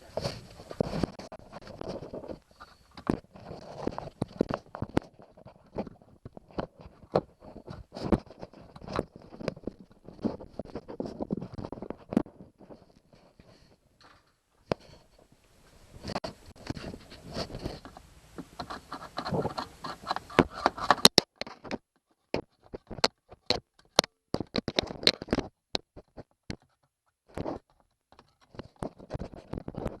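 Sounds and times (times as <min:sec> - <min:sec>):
hands scratching and scraping: 0:00.0 - 0:13.8, 0:14.6 - 0:30.0
sharp clicks and knocks: 0:16.0 - 0:30.0.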